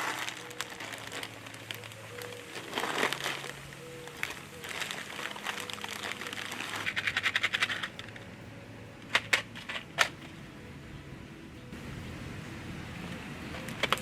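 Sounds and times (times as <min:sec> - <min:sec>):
objects cracking under car tyre: 0:00.0 - 0:08.3, 0:13.5 - 0:14.0.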